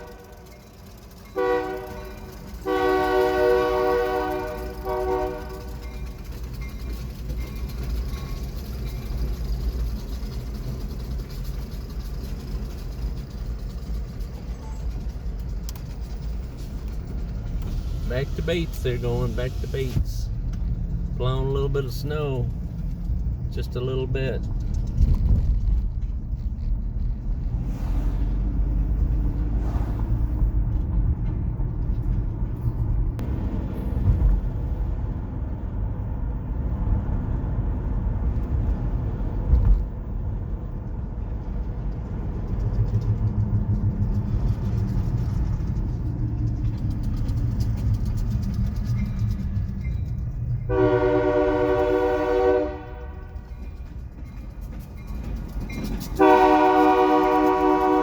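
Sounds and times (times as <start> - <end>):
train horn blast: 0.0 - 6.0, 50.7 - 53.6, 56.2 - 58.0
diesel locomotive rumbling: 0.0 - 58.0.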